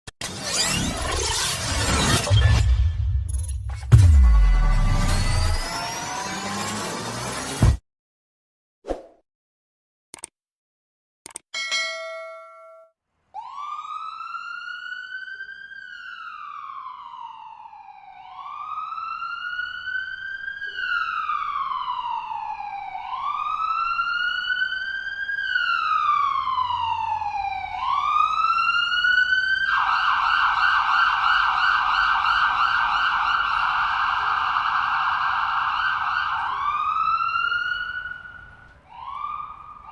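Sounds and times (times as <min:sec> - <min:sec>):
siren rapid yelp: 0:03.9 - 0:07.5, 0:13.4 - 0:39.9
ambulance siren wailing: 0:04.4 - 0:07.5, 0:13.4 - 0:39.9.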